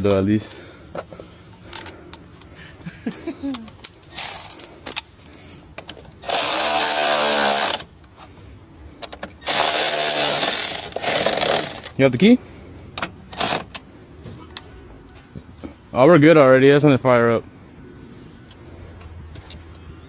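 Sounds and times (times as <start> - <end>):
cordless power tool running: 6.2 - 7.9, 9.4 - 11.9.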